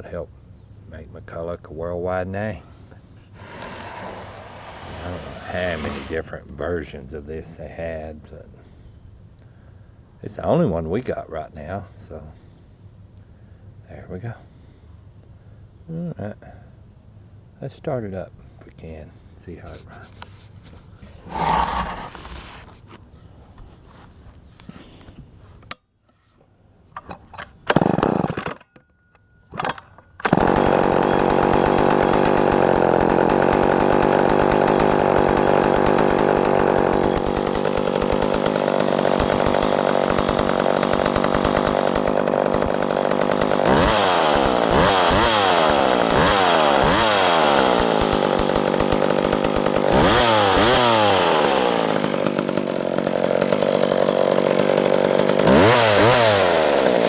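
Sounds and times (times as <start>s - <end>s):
chainsaw starting and revving: 3.3s - 6.5s, 21.1s - 22.8s, 27.7s - 28.6s, 30.2s - 57.0s.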